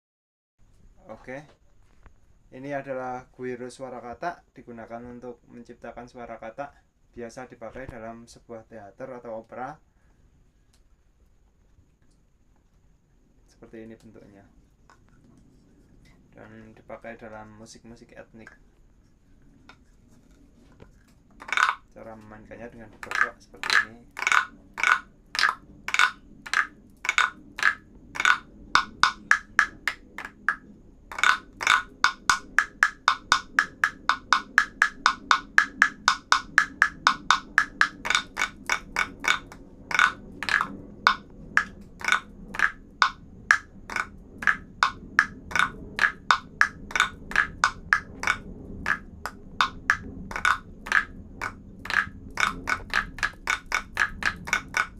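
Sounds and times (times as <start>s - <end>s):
wooden frog guiro rasping: 19.0s - 21.9s, 23.0s - 54.9s.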